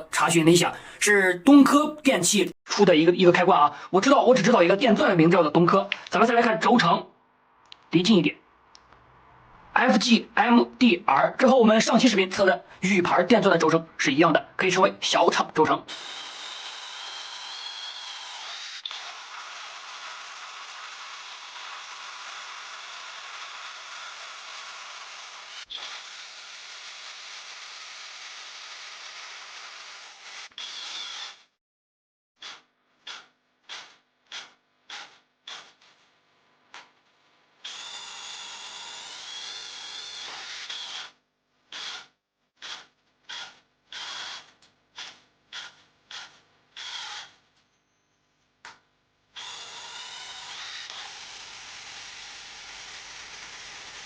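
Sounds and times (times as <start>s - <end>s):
cordless drill running: 15.9s - 31.5s, 32.4s - 35.9s, 37.6s - 47.4s, 49.4s - 54.0s.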